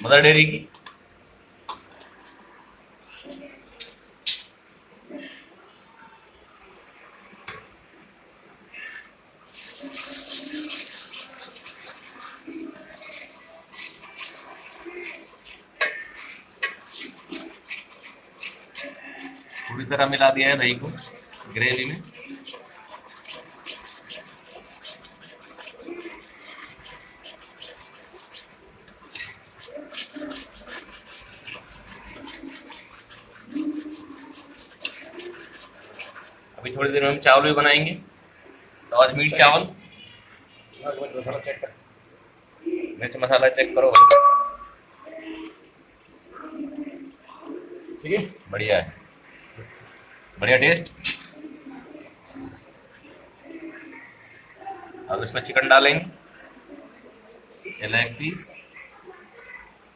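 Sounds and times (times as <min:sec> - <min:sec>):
curry sizzling hiss: 0:08.0 - 0:41.8
bubbly gravy rasp: 0:08.8 - 0:37.8
spoon scraping metal pot: 0:13.0 - 0:36.5.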